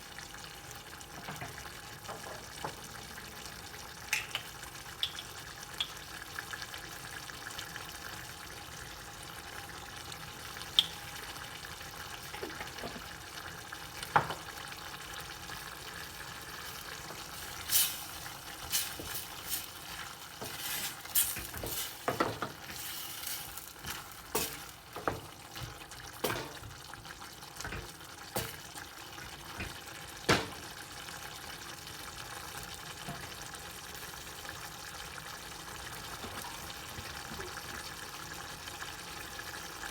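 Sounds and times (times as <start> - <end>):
food sizzling in a pan: 0.0 - 39.9
utensil scraping a pan: 16.4 - 26.7.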